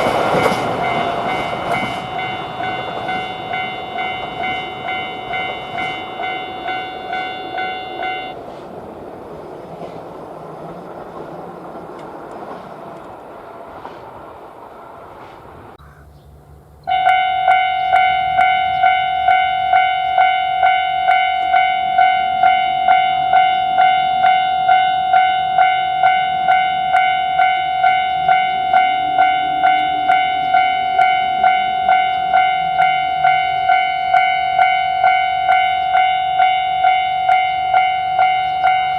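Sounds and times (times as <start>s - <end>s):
level-crossing warning bell: 0.0s - 8.5s, 16.8s - 38.9s
passing train rumble: 0.0s - 38.9s.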